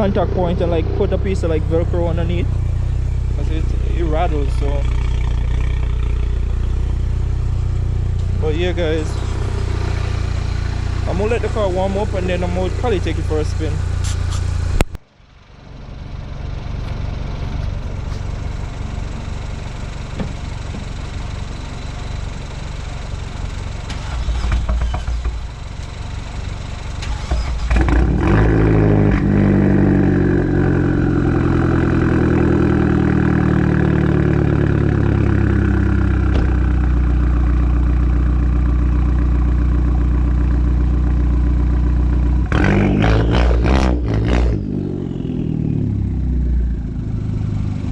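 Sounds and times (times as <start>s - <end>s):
car engine idling: 0.0s - 47.9s.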